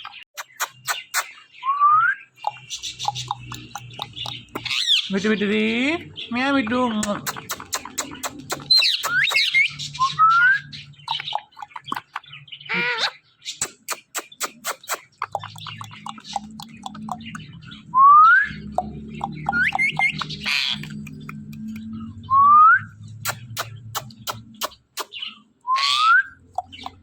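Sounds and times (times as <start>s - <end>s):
parrot clicks and chirps: 0.0s - 1.4s, 2.4s - 5.1s, 6.9s - 9.8s, 11.0s - 17.6s, 18.5s - 22.0s, 23.2s - 27.0s
parrot whistling: 19.4s - 20.8s.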